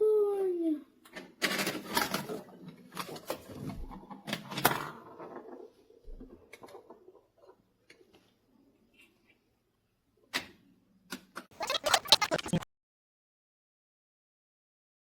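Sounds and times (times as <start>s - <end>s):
plastic building tiles clattering: 1.1s - 8.0s.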